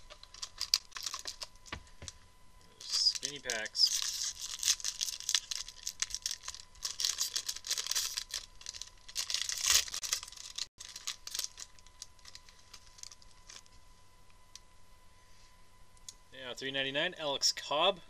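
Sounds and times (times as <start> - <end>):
card pack wrapper crinkling and tearing: 0.0 - 13.7.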